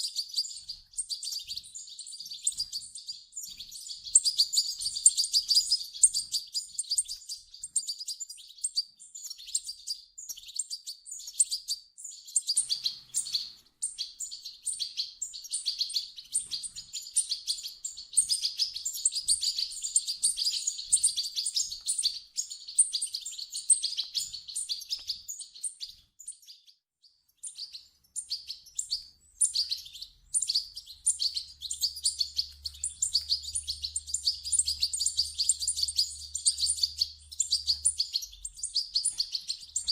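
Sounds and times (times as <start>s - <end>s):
bird chicks chirping: 0.0s - 39.9s.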